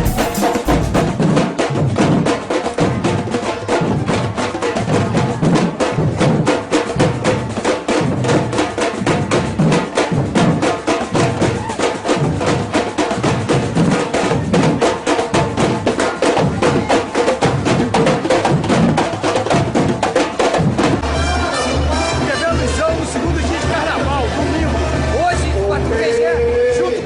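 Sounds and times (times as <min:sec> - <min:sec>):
music with pulsing bass: 0:00.0 - 0:01.2, 0:21.0 - 0:25.6
percussion ensemble drumming: 0:00.0 - 0:27.0.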